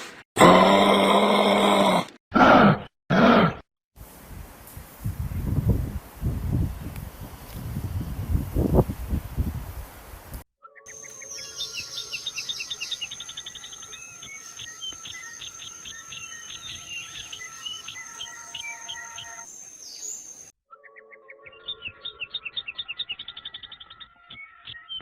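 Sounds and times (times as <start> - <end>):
birds chirping: 10.6 - 25.0.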